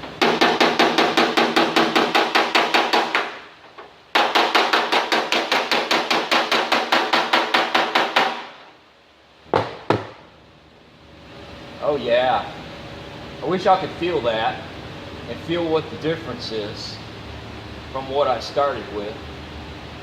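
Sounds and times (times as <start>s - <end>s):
hammer tapping on sheet metal: 0.2s - 3.4s, 4.1s - 8.5s, 9.5s - 10.2s.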